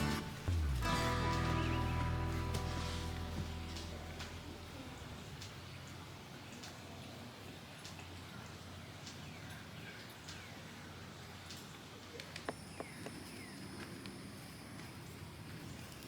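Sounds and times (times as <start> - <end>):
birds chirping: 0.0 - 6.6, 12.3 - 14.6.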